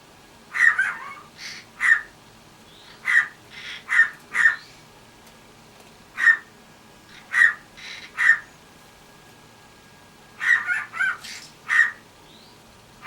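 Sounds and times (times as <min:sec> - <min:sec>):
cockatiel bark-like calls: 0:00.5 - 0:02.2, 0:02.9 - 0:04.7, 0:06.1 - 0:08.6, 0:10.4 - 0:12.1.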